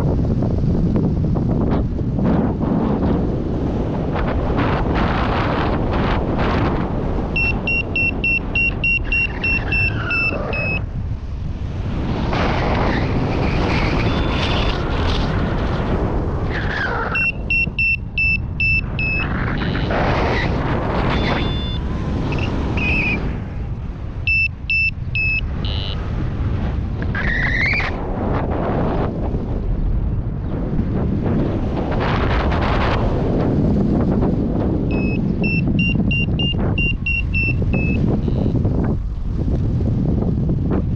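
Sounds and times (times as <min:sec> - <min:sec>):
wind rushing over microphone: 0:00.0 - 0:40.9
variometer beeping: 0:07.3 - 0:10.8, 0:14.0 - 0:14.5, 0:17.1 - 0:20.0, 0:21.0 - 0:23.3, 0:24.2 - 0:26.0, 0:34.9 - 0:38.6.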